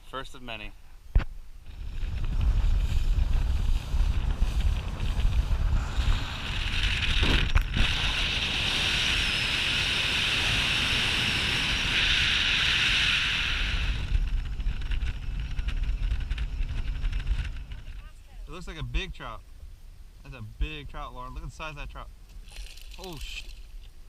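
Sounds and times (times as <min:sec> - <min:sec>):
steady high hiss: 0:00.0 - 0:24.0
wind buffeting microphone: 0:01.1 - 0:19.1.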